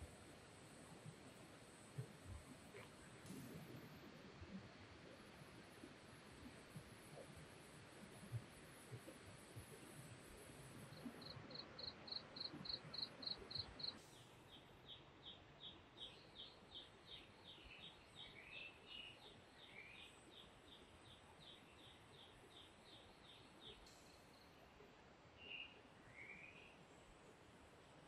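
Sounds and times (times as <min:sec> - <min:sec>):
insect chirping: 0:10.9 - 0:14.0.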